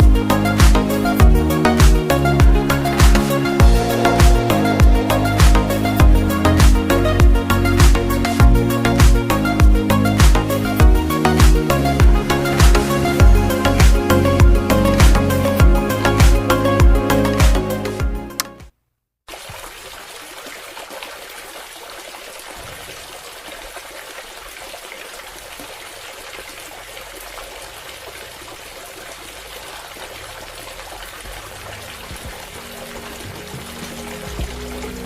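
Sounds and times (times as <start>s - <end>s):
water trickling and pouring from pump: 19.3s - 35.0s.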